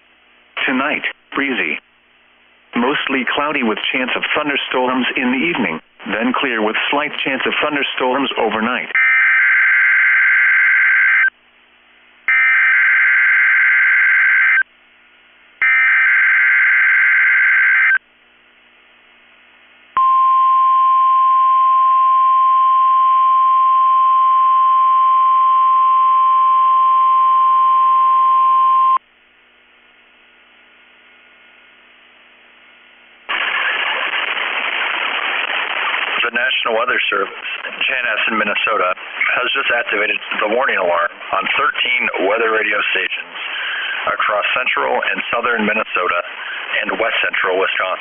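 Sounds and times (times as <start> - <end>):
steady alarm tone: 12.3 - 14.6, 15.6 - 18.0.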